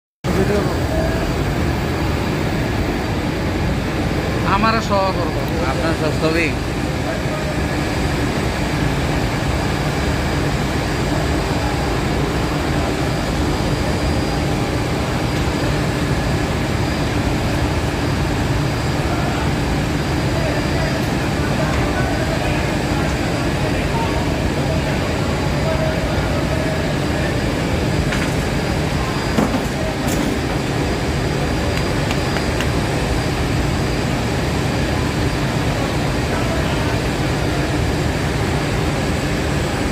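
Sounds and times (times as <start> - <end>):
faint steady whine: 0.3 - 39.9
machine low drone: 0.3 - 39.9.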